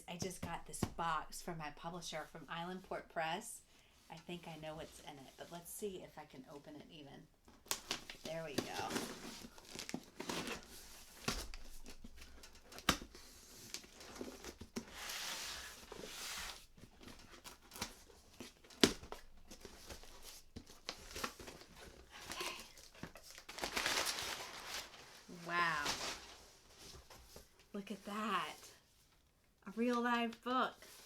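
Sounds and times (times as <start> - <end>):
paper rustling and tearing: 7.7 - 27.1.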